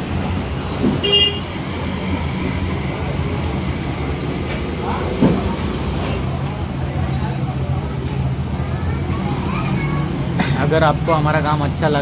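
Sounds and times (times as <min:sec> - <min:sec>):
street traffic rumble: 0:00.0 - 0:12.0
vehicle horn toot: 0:01.0 - 0:01.5.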